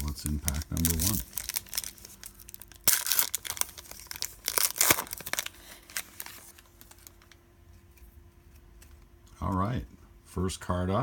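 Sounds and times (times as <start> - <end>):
card pack wrapper tearing: 0.0 - 7.4
cards rustling and clicking: 0.0 - 9.1.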